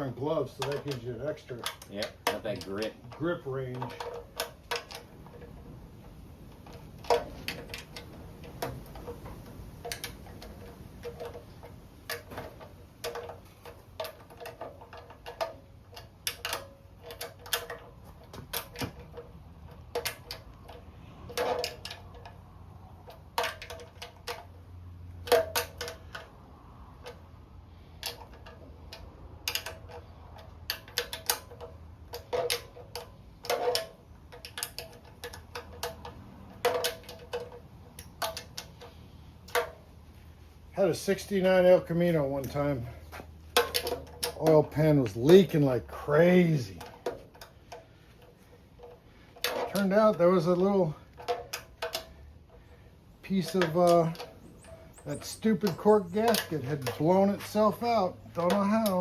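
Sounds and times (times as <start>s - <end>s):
metallic clicks of hand tools: 0.0s - 5.6s, 6.5s - 40.0s, 41.1s - 59.0s.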